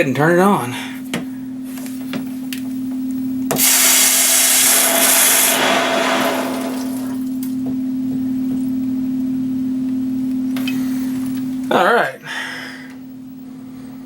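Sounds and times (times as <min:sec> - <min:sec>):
water rushing through pipes: 0:03.6 - 0:07.3.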